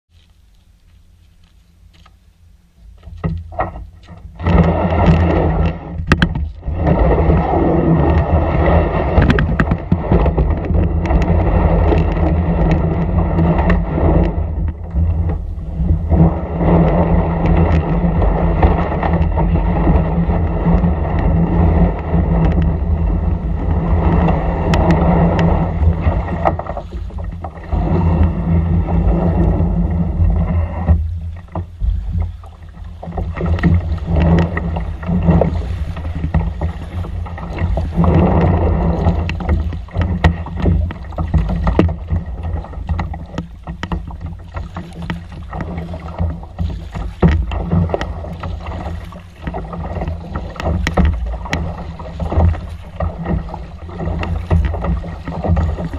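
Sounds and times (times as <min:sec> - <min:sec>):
steady hum: 0:00.1 - 0:55.9
low rumble: 0:00.7 - 0:55.9
paddle splashes and knocks: 0:02.9 - 0:55.9.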